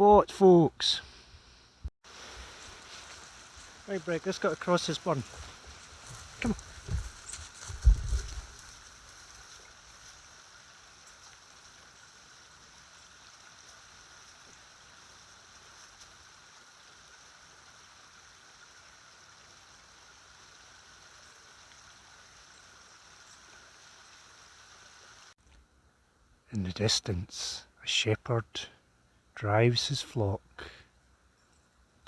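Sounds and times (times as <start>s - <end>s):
stream water trickling: 2.0s - 25.4s.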